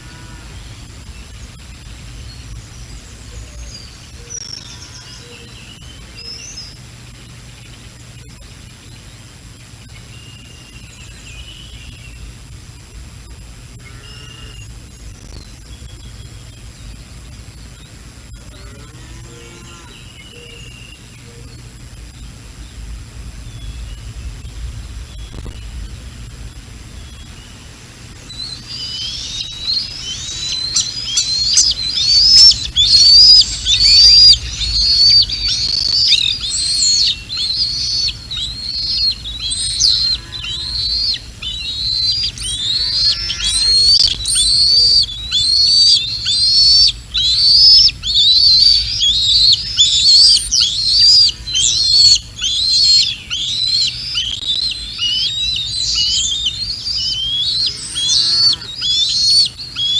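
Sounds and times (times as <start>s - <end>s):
eagle chittering calls: 0.0s - 6.7s, 26.9s - 59.9s
steady low rumble: 0.0s - 13.9s, 14.5s - 19.0s, 19.9s - 57.9s.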